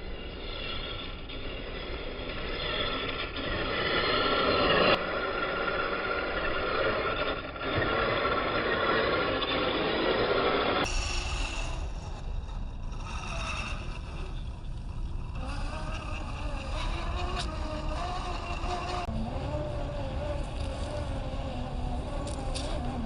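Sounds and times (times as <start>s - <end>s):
tyres rumbling on terrain: 2.6s - 23.0s
toy car motor whining: 12.9s - 23.0s.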